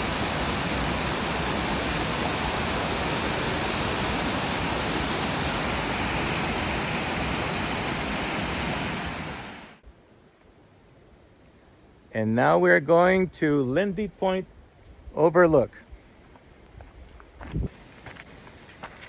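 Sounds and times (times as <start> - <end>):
waterfall roaring: 0.0 - 9.8.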